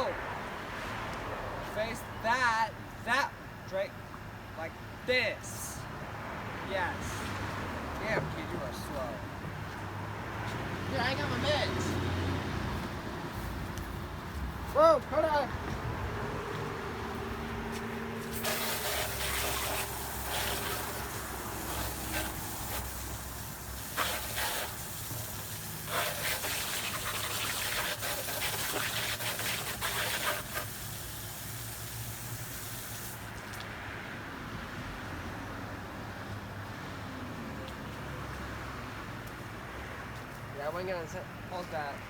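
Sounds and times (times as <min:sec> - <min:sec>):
water spraying from hose nozzle: 0:18.2 - 0:33.3.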